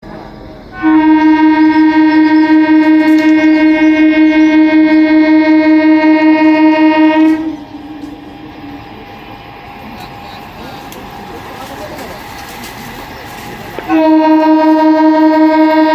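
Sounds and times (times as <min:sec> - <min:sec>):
train noise: 0:00.0 - 0:15.9
train horn blast: 0:00.7 - 0:09.1, 0:13.8 - 0:15.9.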